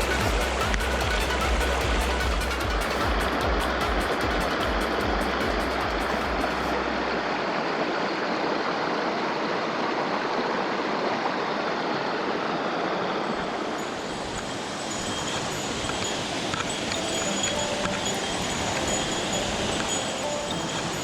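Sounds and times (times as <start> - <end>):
background music: 0.0 - 7.4, 17.0 - 21.0
stream rushing over rocks: 0.0 - 21.0.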